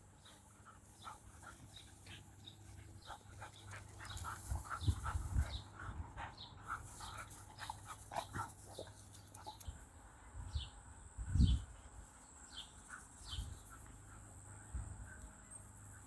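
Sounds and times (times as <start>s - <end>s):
dog panting: 0.3s - 9.6s.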